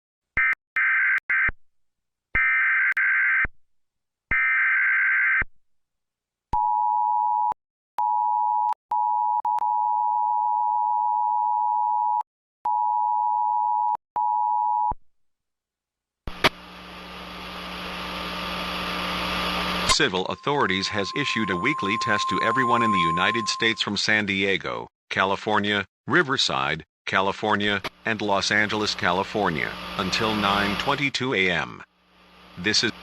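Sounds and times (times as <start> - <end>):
steady hum with hiss: 16.6 - 19.9, 28.1 - 33.0
two-tone attention signal: 19.9 - 24.0
digital data tone bursts: 19.9 - 24.2, 28.5 - 31.1.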